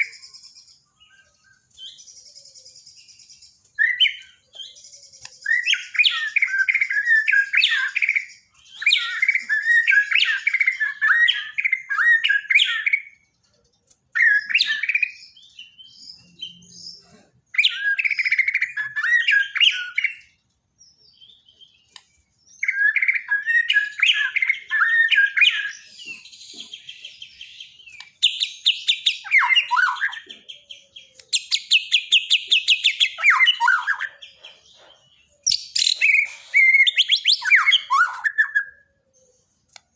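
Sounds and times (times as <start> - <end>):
bird singing whistled phrases: 0.0 - 13.2, 14.2 - 16.8, 17.6 - 20.4, 21.2 - 34.4, 35.4 - 39.3
bird trilling: 22.6 - 39.3.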